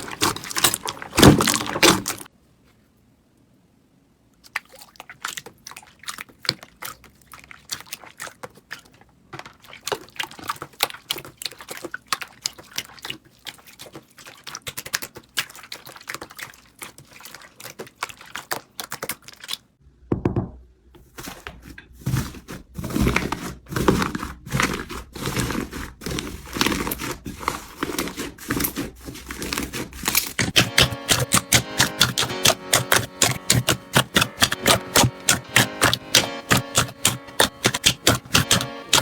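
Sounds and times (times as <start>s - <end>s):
slime crackling and popping: 0.0s - 2.3s, 24.6s - 39.0s.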